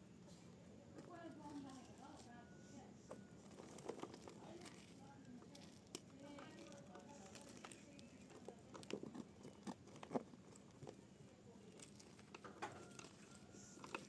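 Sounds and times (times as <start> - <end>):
dry mud crunching: 3.4 - 14.0.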